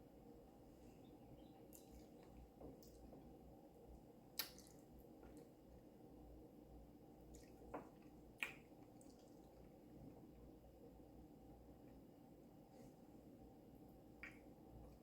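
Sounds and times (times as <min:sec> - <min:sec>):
wet mouth clicks and lip smacks: 0:04.4 - 0:04.8.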